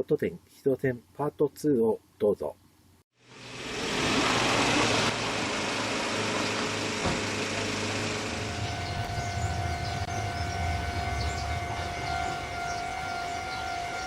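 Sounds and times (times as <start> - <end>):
train low rumble: 3.8 - 14.0
steady high tone: 7.4 - 14.0.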